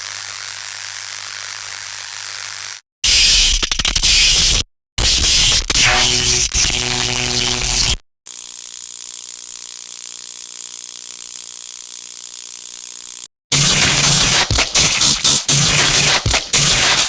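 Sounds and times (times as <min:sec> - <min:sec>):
stun gun crackling: 0:13.6 - 0:17.0.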